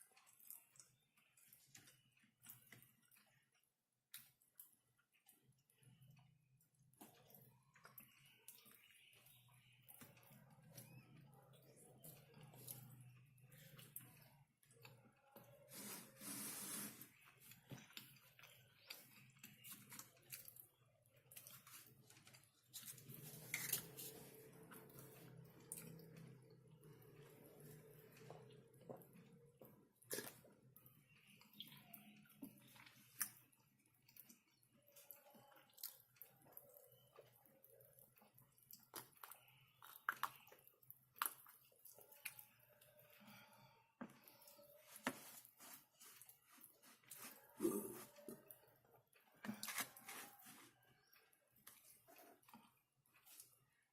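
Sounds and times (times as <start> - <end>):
wet mouth eating sounds: 17.9 - 42.7, 46.0 - 50.4.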